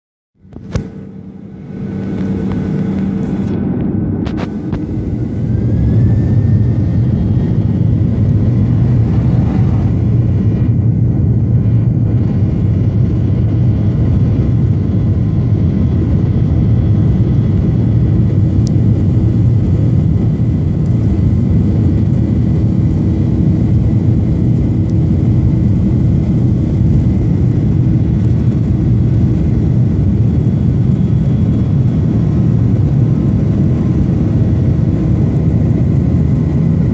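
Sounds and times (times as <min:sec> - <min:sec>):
jet engines spooling up: 0:00.6 - 0:12.9.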